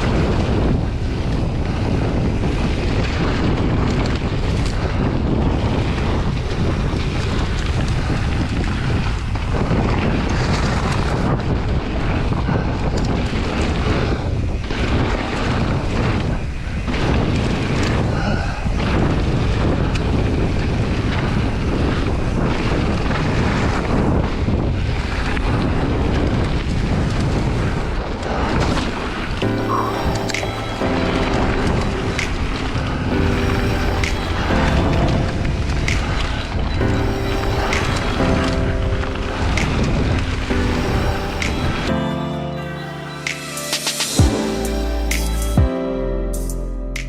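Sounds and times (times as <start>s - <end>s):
bike rolling rumble: 0.0s - 29.5s
wind buffeting microphone: 0.0s - 45.7s.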